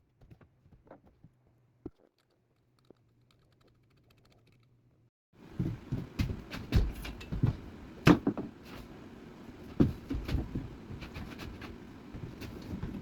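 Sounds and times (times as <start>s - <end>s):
steady background noise: 5.4s - 13.0s
irregular knocks and thumps: 5.5s - 9.0s, 9.6s - 13.0s.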